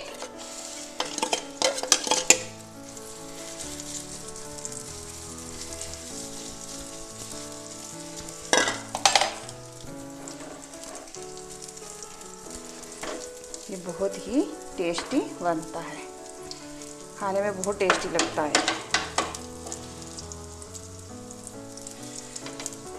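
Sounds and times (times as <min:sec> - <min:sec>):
batter sizzling in a pan: 0:00.0 - 0:22.9.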